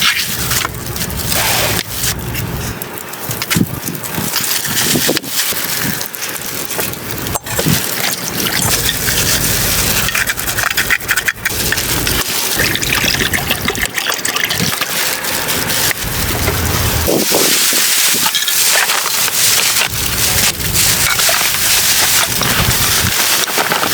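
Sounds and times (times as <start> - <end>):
wind buffeting microphone: 15.8 - 18.4, 19.4 - 23.9.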